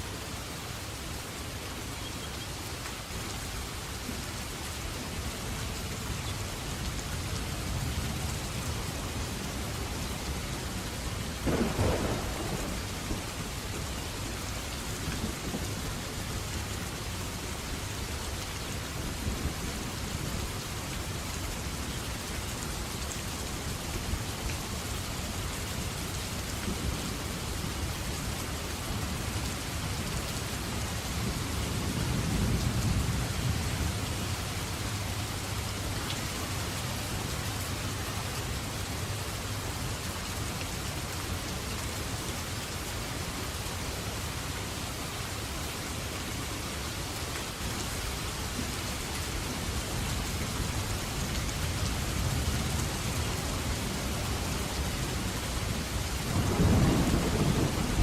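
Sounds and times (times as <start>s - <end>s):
heavy rain falling: 0.0s - 58.0s
distant thunder rumble: 11.4s - 13.3s, 56.3s - 58.0s.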